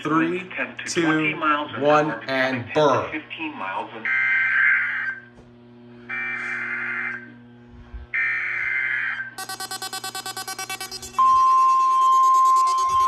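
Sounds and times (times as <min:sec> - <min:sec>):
rapid pulsing electronic buzz: 0:05.7 - 0:13.0
screeching digital data bursts: 0:09.4 - 0:13.0.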